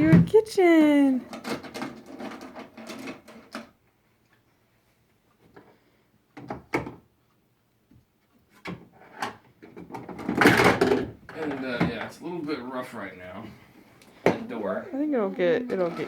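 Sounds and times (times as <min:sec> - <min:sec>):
toy door and drawers knocking: 0:00.0 - 0:00.3.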